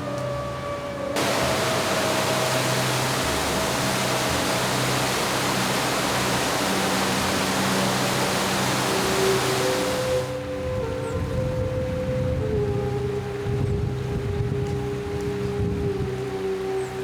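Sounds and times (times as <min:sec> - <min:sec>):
music with long held notes: 0:00.0 - 0:17.0
loud steady rushing noise: 0:01.2 - 0:10.4.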